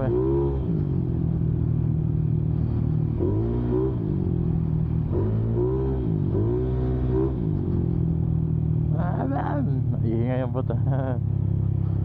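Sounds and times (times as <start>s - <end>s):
motorcycle engine revving: 0.0s - 12.0s.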